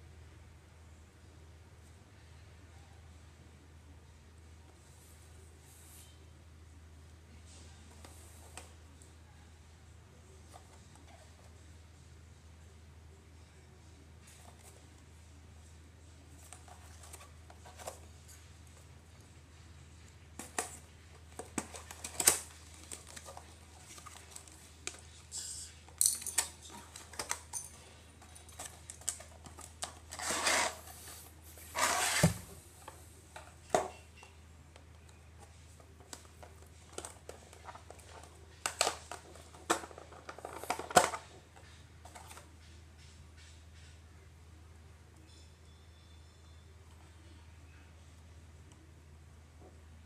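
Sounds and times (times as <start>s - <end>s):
packaging scraping or rustling: 28.5s - 32.5s.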